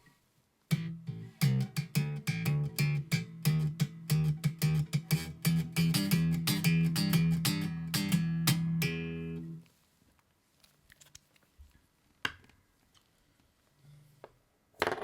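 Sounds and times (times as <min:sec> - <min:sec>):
picked guitar tune: 0:00.7 - 0:09.6.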